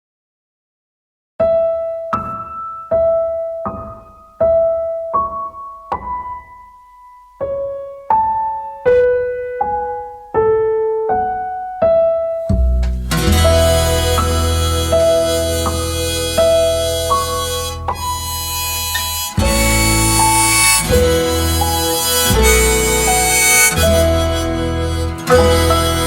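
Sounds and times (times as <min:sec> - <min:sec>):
slow piano melody: 0:01.4 - 0:26.0
deep bass accompaniment: 0:12.5 - 0:26.0.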